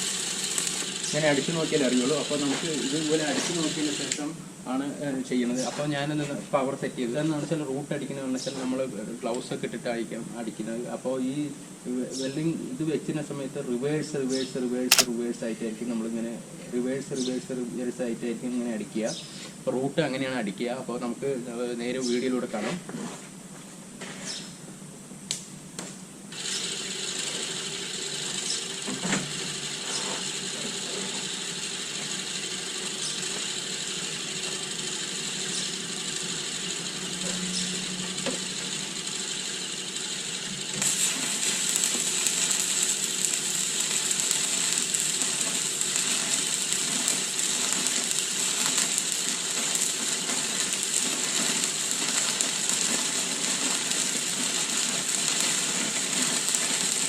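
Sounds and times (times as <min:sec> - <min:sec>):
welding arc crackling and sizzling: 0:00.0 - 0:04.3, 0:26.3 - 0:57.0.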